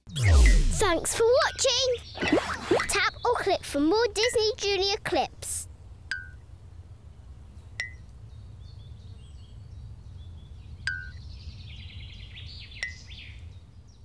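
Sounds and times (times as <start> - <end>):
high twittering notes: 0.0 - 3.4
low steady hum: 0.0 - 11.4.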